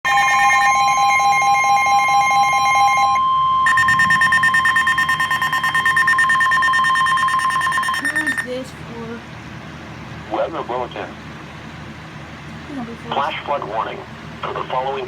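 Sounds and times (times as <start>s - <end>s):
electronic alert alarm tones: 0.1s - 8.6s.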